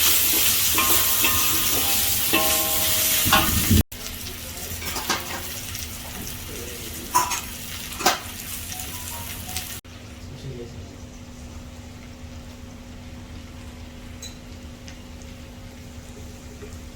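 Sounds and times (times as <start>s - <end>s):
vegetables sizzling in a pan: 0.0s - 10.2s
utensil knocking against pan: 0.8s - 3.6s.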